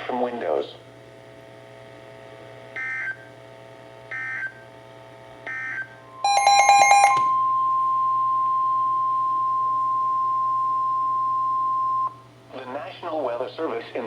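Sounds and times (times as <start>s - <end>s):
steady warning alarm tone: 4.1s - 4.6s, 5.5s - 12.2s
squawky data tone bursts: 5.5s - 8.7s.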